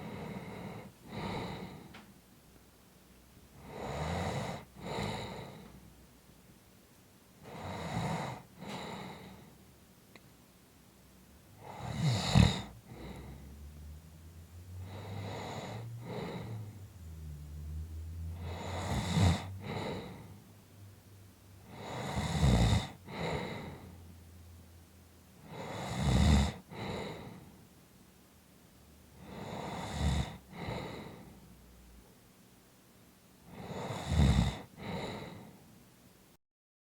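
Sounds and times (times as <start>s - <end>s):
person snoring: 0.0s - 2.0s, 3.6s - 5.8s, 7.4s - 9.5s, 11.6s - 20.4s, 21.6s - 24.0s, 25.4s - 27.4s, 29.2s - 31.4s, 33.5s - 35.5s.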